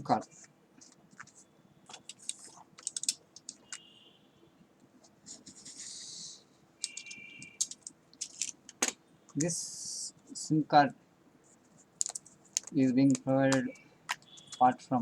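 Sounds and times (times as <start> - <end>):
small plastic clicks and taps: 12.0 - 14.6.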